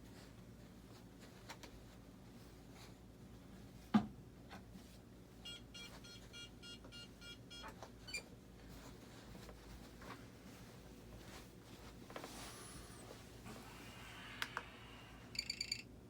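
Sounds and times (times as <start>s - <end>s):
short electronic beeps: 5.5s - 8.2s.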